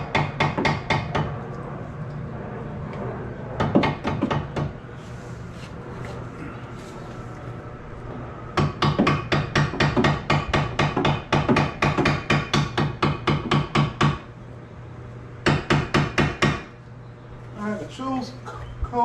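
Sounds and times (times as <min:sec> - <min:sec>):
hammer striking a chisel: 0:00.1 - 0:01.3, 0:08.6 - 0:14.2, 0:15.4 - 0:16.7.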